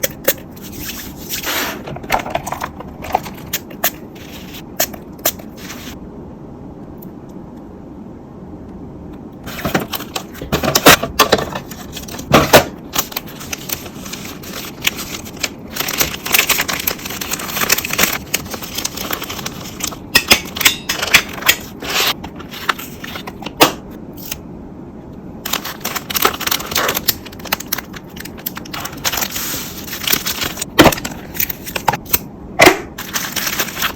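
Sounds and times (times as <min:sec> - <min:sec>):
packaging rustling and crinkling: 0:09.5 - 0:20.1, 0:25.5 - 0:32.0, 0:33.0 - 0:33.9.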